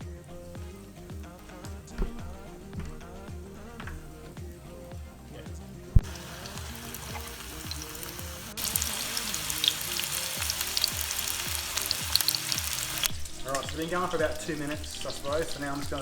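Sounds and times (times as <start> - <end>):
fish frying in oil: 6.0 - 16.0.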